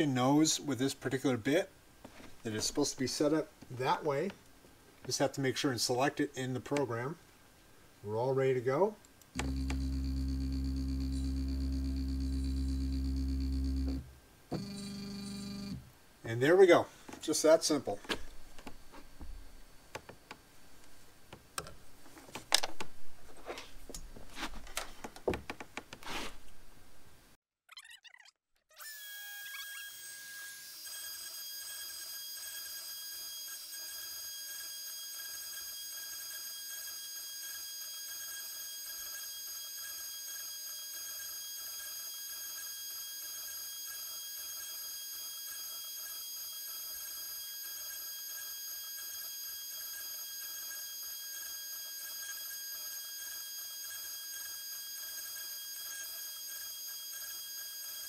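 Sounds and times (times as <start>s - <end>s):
router spindle high-pitched whine: 9.4s - 15.8s, 28.8s - 58.0s.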